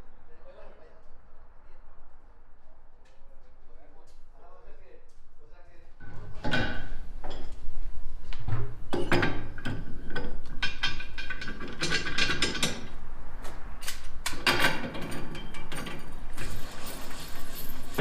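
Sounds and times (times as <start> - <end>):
metallic clanks and knocks: 6.0 - 7.6, 8.5 - 12.9, 14.3 - 16.6.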